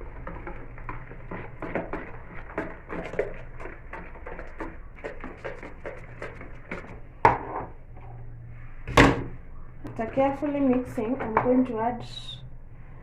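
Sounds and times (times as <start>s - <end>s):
whisk scraping a bowl: 0.0s - 7.0s.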